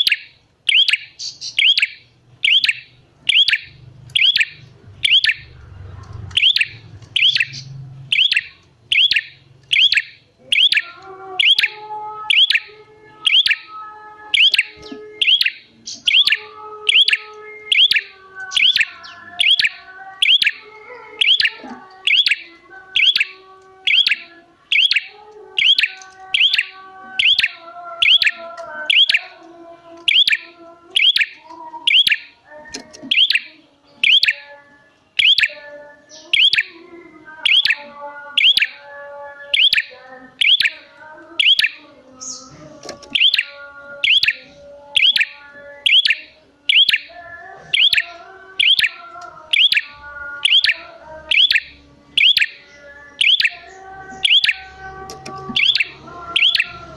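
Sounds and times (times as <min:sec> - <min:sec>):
bird sharp chirp: 0:06.3 - 0:12.7.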